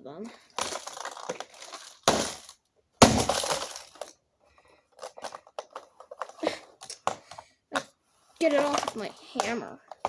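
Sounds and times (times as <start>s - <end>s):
loose pieces clicking and clinking: 0.5s - 2.6s, 3.3s - 4.2s, 4.9s - 10.0s
hammer smashing radio: 0.6s - 4.1s.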